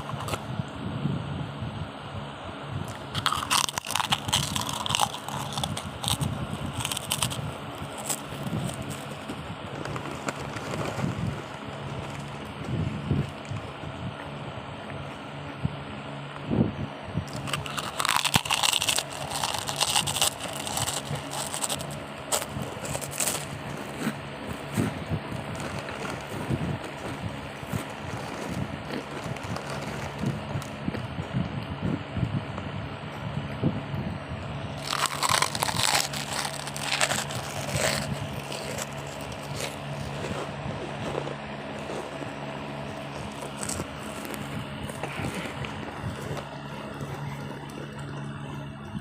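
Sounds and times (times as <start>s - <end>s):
chips crunching: 0.0s - 0.4s, 2.9s - 12.4s, 17.3s - 30.8s, 34.8s - 48.7s
low hum: 0.0s - 49.0s.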